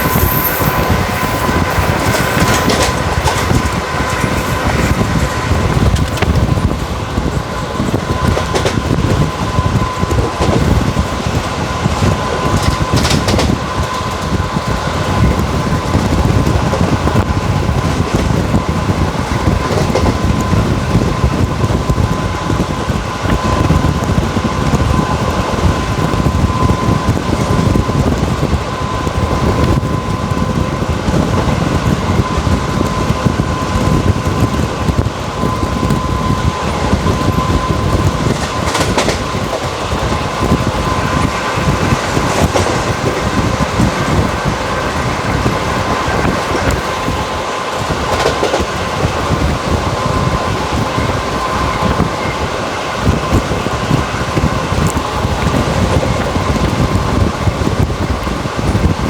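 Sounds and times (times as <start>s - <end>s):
sharp track clatter: 0.0s - 59.0s
train wheels rumbling on rails: 0.0s - 59.0s.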